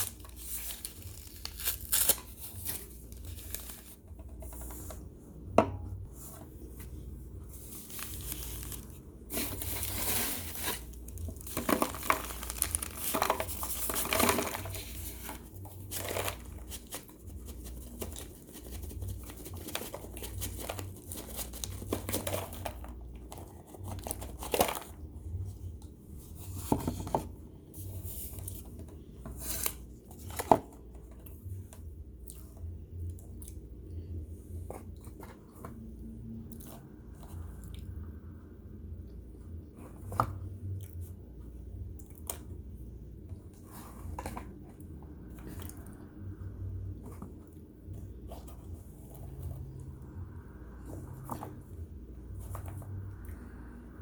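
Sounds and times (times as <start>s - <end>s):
crumbly crackling and rustling: 0.0s - 4.9s, 6.1s - 31.8s.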